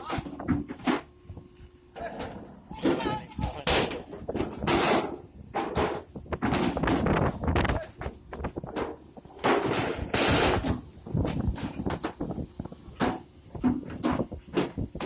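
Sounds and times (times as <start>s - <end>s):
frozen cargo knocking and banging: 12.9s - 15.0s.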